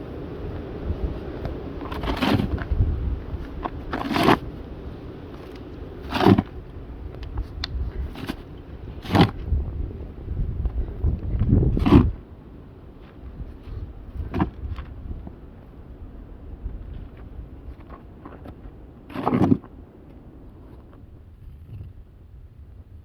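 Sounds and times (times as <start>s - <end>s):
low wind rumble: 0.0s - 23.0s
snow shovel scraping packed snow: 0.4s - 6.6s, 8.0s - 9.5s, 17.8s - 19.7s.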